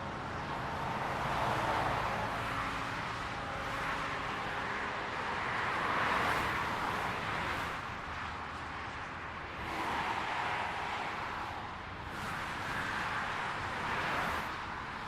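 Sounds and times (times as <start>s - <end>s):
highway traffic rushing: 0.0s - 15.0s.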